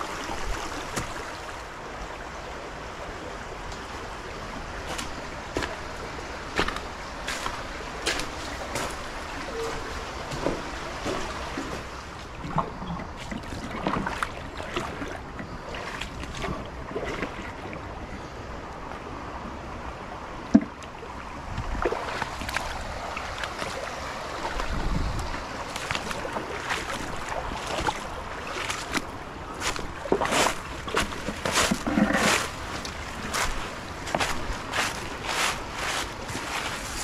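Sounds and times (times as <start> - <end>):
water sloshing and splashing: 0.0 - 1.8, 3.6 - 18.2, 20.3 - 37.0
wind buffeting microphone: 21.3 - 37.0.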